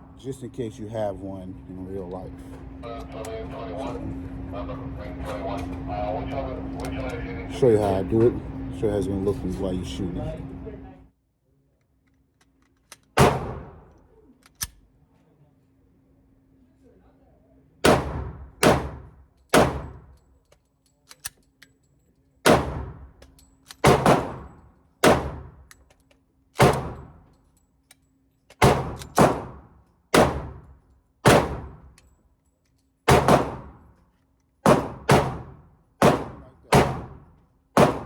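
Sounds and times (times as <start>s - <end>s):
pistol shots: 13.2s - 13.9s, 17.8s - 20.1s, 22.4s - 23.1s, 23.8s - 25.6s, 26.6s - 27.2s, 28.6s - 31.9s, 33.1s - 33.9s, 34.6s - 38.0s.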